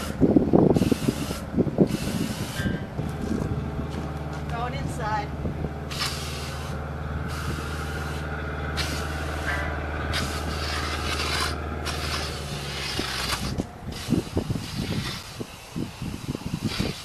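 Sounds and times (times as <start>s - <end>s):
small motor humming: 5.4s - 17.0s.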